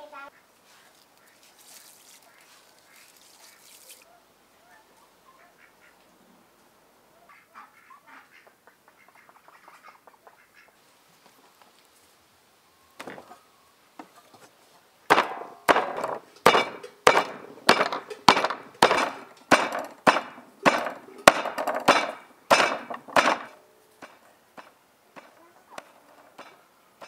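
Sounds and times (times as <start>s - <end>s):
sharp ringing knocks: 15.1s - 25.3s.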